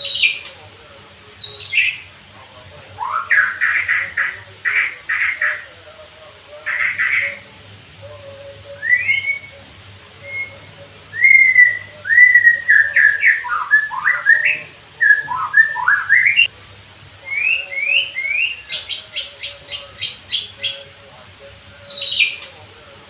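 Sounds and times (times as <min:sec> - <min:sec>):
songbird whistling: 0:00.0 - 0:00.6, 0:01.4 - 0:02.1, 0:03.0 - 0:05.7, 0:06.6 - 0:07.5, 0:08.4 - 0:16.5, 0:17.2 - 0:20.9, 0:21.8 - 0:22.6.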